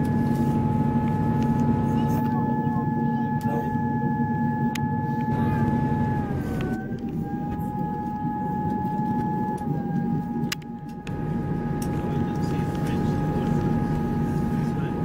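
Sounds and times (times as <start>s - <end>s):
high whine: 0.0s - 15.0s.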